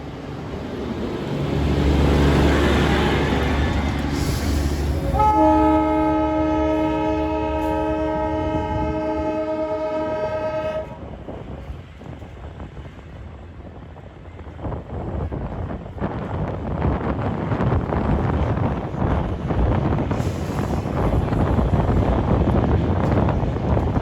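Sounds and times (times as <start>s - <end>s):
train whistle chord: 5.1s - 11.0s.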